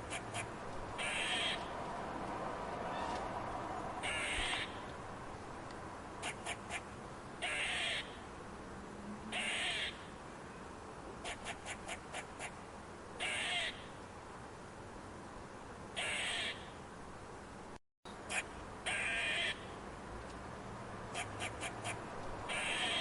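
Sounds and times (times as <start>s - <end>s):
squirrel rasping calls: 0.0s - 1.7s, 4.0s - 4.9s, 6.2s - 8.2s, 9.3s - 10.1s, 11.2s - 12.6s, 13.2s - 13.9s, 16.0s - 16.8s, 18.3s - 19.8s, 21.1s - 23.0s.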